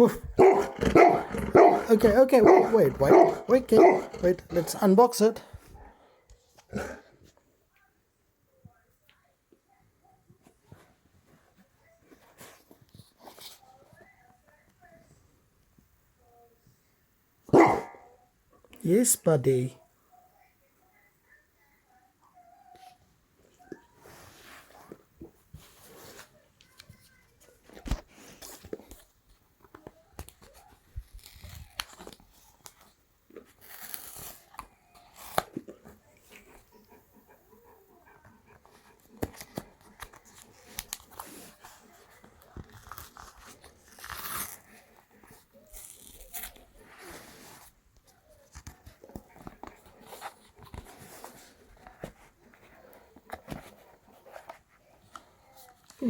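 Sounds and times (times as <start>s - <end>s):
seals and film tearing: 30.5s - 32.8s, 33.4s - 35.6s, 42.5s - 44.8s, 45.7s - 46.7s.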